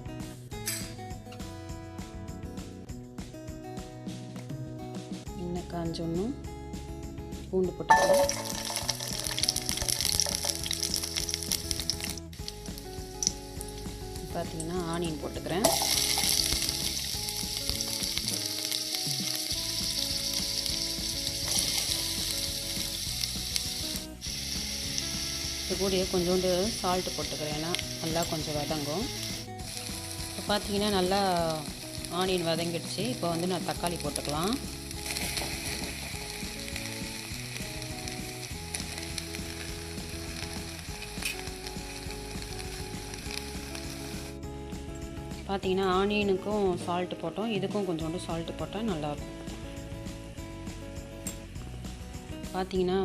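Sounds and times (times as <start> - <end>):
onions sizzling in hot oil: 7.9 - 44.4.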